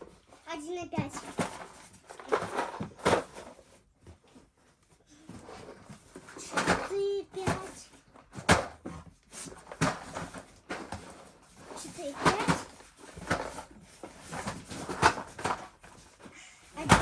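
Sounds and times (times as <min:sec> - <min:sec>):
boxes knocking and thudding: 0:00.6 - 0:04.5, 0:05.2 - 0:17.0.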